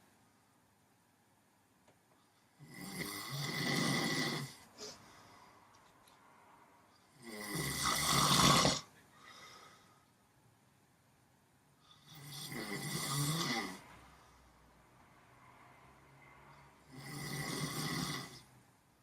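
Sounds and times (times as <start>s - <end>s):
person snoring: 2.5s - 5.0s, 7.1s - 9.8s, 11.9s - 13.9s, 16.8s - 18.5s
quiet breathing: 4.4s - 7.2s, 8.8s - 10.3s, 11.7s - 12.5s, 13.7s - 17.1s.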